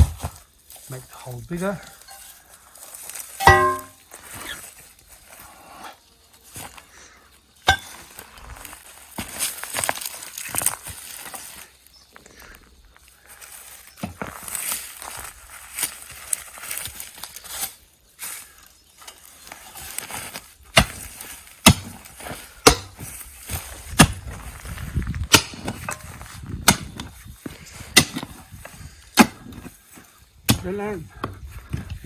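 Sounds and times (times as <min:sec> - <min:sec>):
digging tool chopping clay: 0:03.4 - 0:03.9, 0:20.7 - 0:23.2, 0:23.9 - 0:24.4, 0:25.2 - 0:27.2, 0:27.9 - 0:28.5, 0:29.2 - 0:29.7, 0:30.5 - 0:31.4
digging tool scraping soil: 0:14.2 - 0:31.0.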